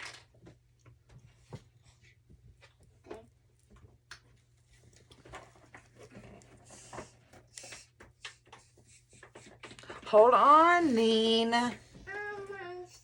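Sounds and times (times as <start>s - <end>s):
hands rustling and clicking: 0.0s - 10.1s.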